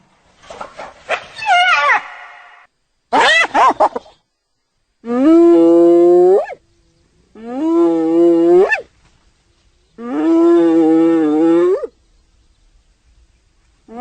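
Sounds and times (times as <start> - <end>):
hyena calling: 1.1 - 3.6.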